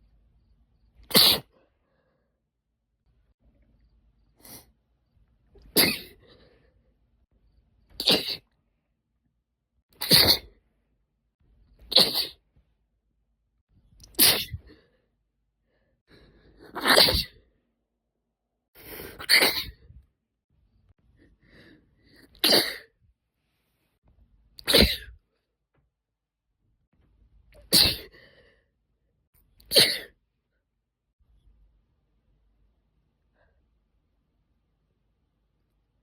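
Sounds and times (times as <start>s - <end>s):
woman sneezing: 1.1s - 1.5s, 5.7s - 6.2s, 8.0s - 8.5s, 10.0s - 10.5s, 11.9s - 12.4s, 14.1s - 14.7s, 16.7s - 17.4s, 19.1s - 19.8s, 22.4s - 22.9s, 24.6s - 25.2s, 27.6s - 28.2s, 29.7s - 30.1s.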